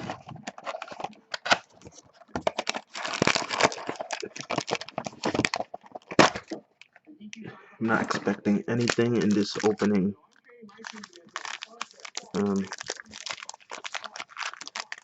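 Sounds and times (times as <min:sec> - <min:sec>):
packaging being torn open: 0:02.4 - 0:06.6, 0:08.8 - 0:09.9, 0:10.8 - 0:15.0.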